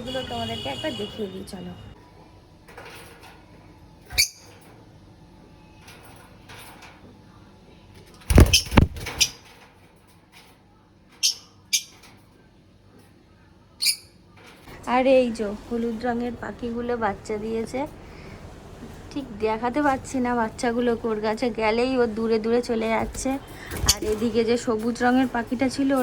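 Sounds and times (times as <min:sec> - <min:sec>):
pet birds chirping: 0:04.0 - 0:04.6, 0:08.3 - 0:09.5, 0:11.2 - 0:12.1, 0:13.7 - 0:14.2
heavy thumps: 0:08.3 - 0:09.3.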